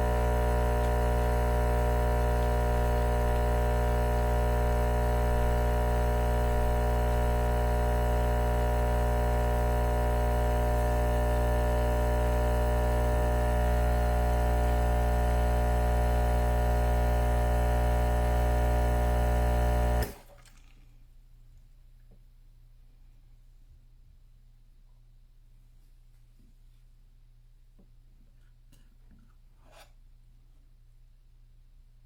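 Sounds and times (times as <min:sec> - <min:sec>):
espresso machine pump buzzing: 0:00.0 - 0:20.2.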